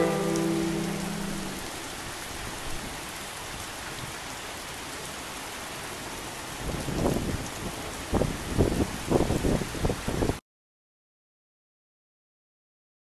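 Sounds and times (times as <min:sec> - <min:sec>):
steady rain falling: 0:00.0 - 0:10.4.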